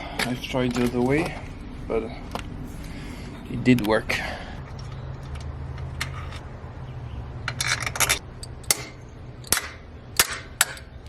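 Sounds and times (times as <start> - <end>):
steady low hum: 0.0 - 11.0
metal tools clinking and scraping: 3.7 - 6.5, 7.5 - 11.0.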